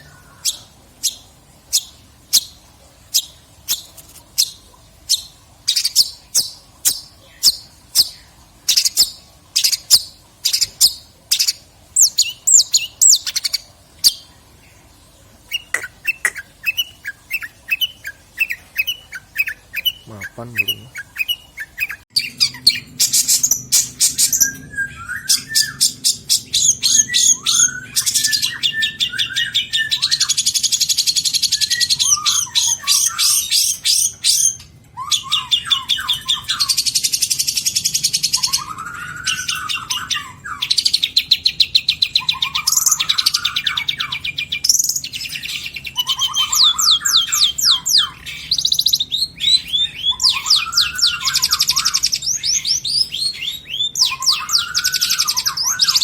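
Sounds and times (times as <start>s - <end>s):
shrike singing: 15.5s - 34.4s, 42.1s - 56.0s.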